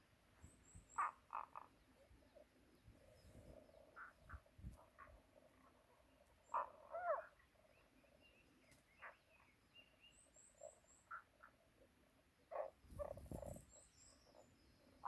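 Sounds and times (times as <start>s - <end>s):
wild animal warbling calls: 6.5s - 7.3s.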